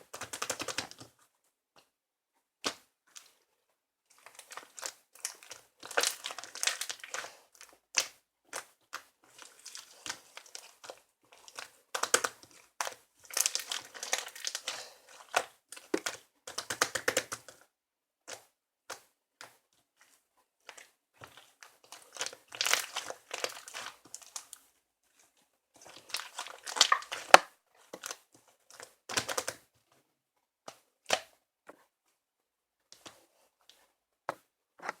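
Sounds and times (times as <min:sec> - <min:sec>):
material crinkling and tearing: 0:04.2 - 0:17.0, 0:20.0 - 0:29.6.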